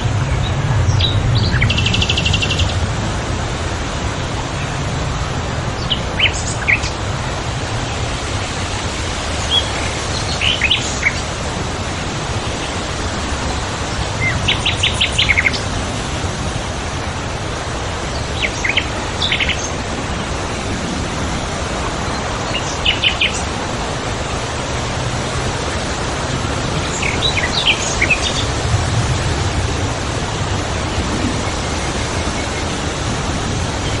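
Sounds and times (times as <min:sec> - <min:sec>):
steady rushing noise: 0:00.0 - 0:34.0
woodland birds chirping: 0:26.8 - 0:28.6.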